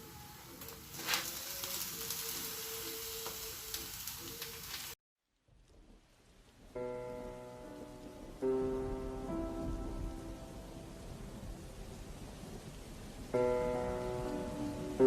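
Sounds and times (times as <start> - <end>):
food sizzling in hot oil: 0.0 - 5.0
faint background music: 6.7 - 15.0.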